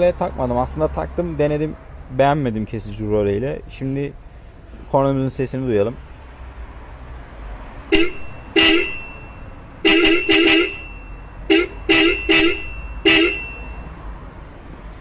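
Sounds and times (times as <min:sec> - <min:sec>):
car horn blasts: 0:07.9 - 0:13.8.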